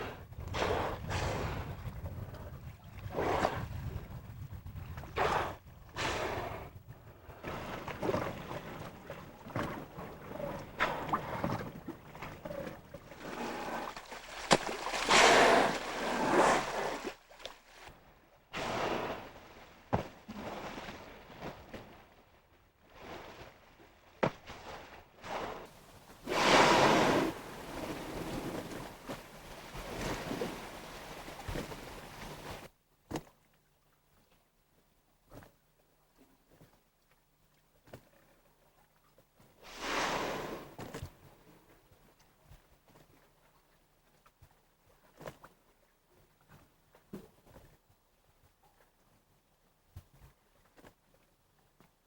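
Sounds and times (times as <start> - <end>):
water splashing: 7.4 - 17.9, 24.2 - 32.7.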